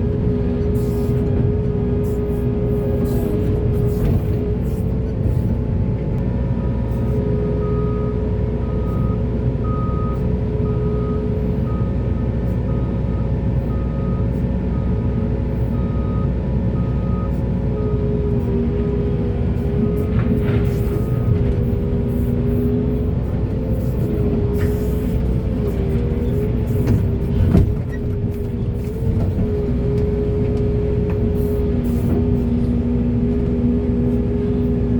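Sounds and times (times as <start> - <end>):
diesel machinery running: 0.0 - 34.9
reversing alarm beeping: 6.6 - 18.6.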